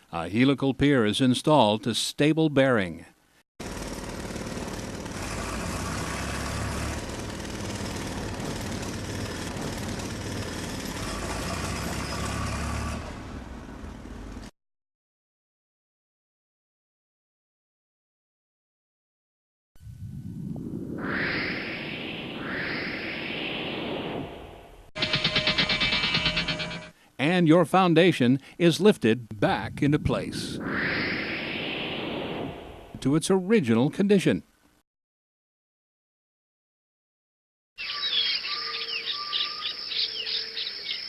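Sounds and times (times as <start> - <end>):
hydraulic equipment engine drone: 3.6 - 14.5, 25.0 - 27.0
whooshing rush: 19.8 - 24.9, 30.3 - 33.0.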